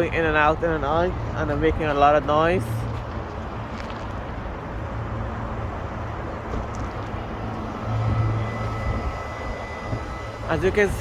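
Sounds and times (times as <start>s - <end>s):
traffic rumbling over bridge: 0.0s - 11.0s.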